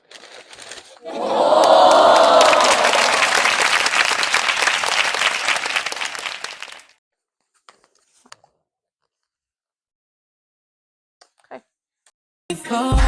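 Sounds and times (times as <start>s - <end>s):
crowd cheering and shouting: 1.0s - 3.7s
crowd clapping: 1.1s - 7.0s.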